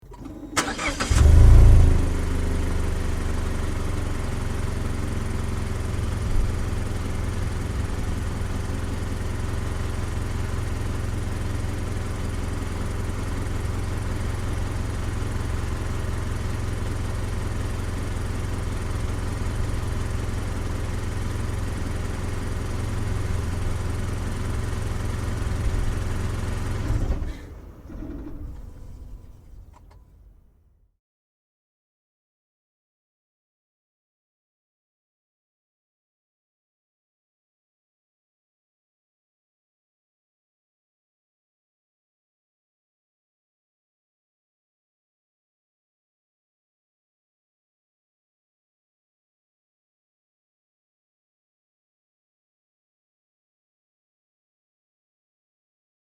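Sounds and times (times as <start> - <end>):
car engine idling: 0.0 - 30.5
car engine revving: 0.1 - 3.6.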